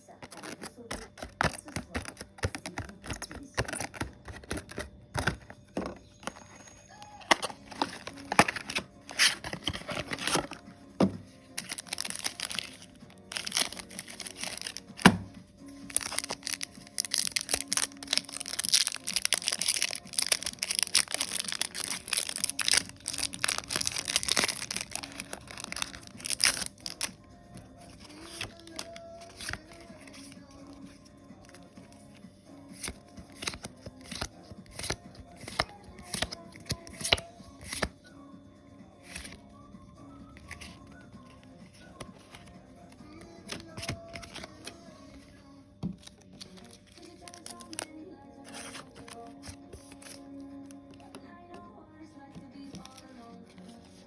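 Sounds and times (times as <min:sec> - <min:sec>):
quiet music: 0:00.0 - 0:54.0
packaging crinkling and tearing: 0:00.2 - 0:06.4, 0:07.2 - 0:10.6, 0:11.6 - 0:15.2, 0:15.8 - 0:27.1, 0:27.9 - 0:30.4, 0:46.1 - 0:47.9.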